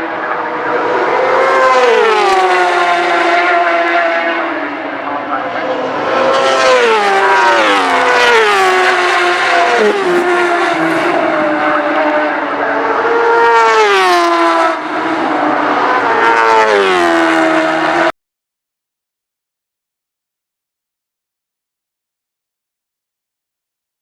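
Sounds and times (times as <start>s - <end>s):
racing motorcycles passing: 0.0s - 18.1s.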